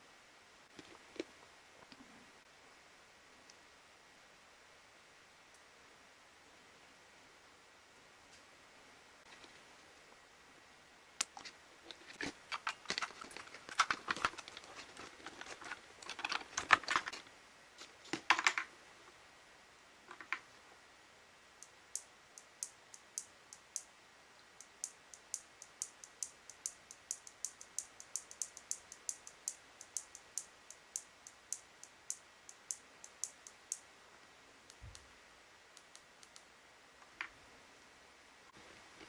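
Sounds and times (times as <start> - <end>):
light sharp clicks: 35.8 - 36.5.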